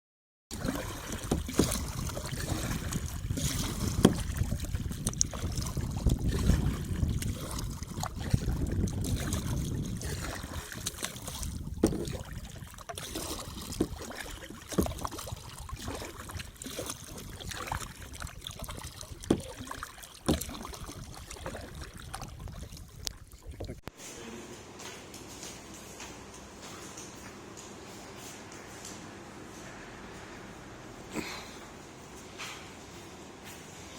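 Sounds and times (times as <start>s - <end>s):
paddle splashing in water: 0.5s - 23.8s.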